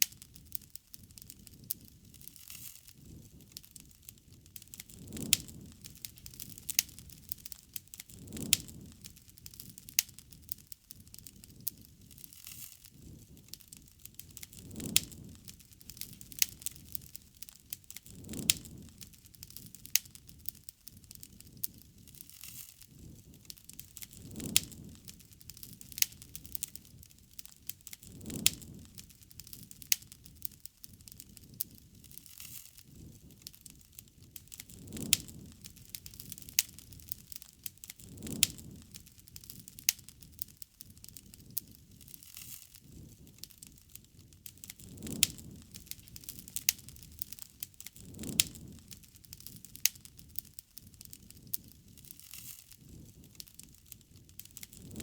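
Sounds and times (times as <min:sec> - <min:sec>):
wood fire crackling and popping: 0:00.0 - 0:55.0.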